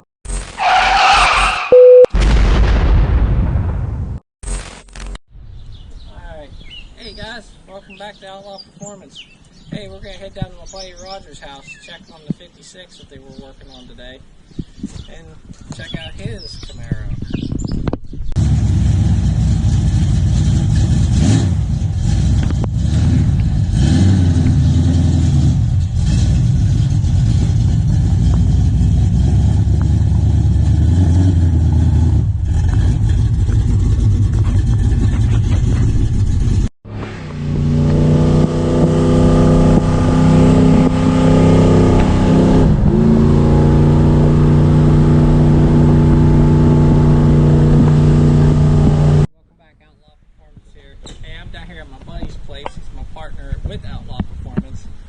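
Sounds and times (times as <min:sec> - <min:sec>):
car driving road rumble: 0:16.3 - 0:49.3
car engine idling and revving: 0:18.3 - 0:49.3.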